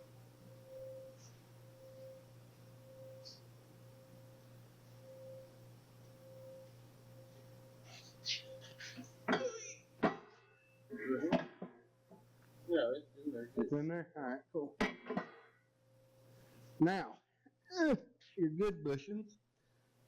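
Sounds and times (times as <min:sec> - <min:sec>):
faint pulsing tone: 0:00.0 - 0:09.3
steady low hum: 0:00.0 - 0:17.1.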